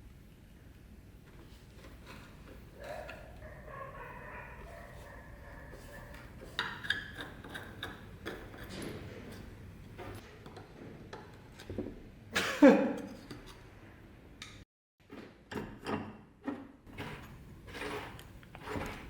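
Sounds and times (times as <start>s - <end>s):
objects clicking and knocking: 5.5s - 12.0s.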